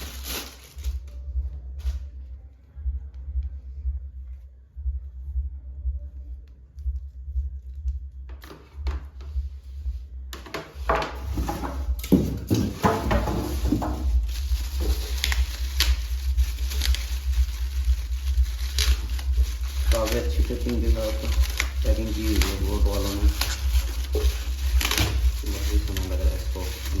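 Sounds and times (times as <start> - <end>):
packaging rustling: 0.0 - 2.0, 10.8 - 27.0
steady low hum: 0.0 - 27.0.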